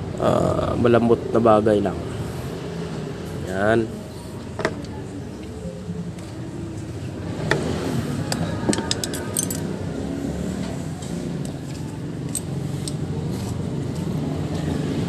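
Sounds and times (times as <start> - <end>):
metallic clicks of tools: 8.3 - 9.7.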